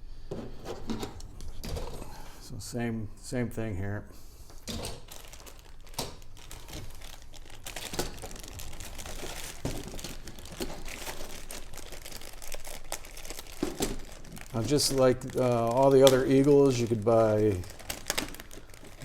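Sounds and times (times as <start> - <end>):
plastic packaging crinkling: 4.6 - 19.0
plastic parts clicking: 4.7 - 19.0.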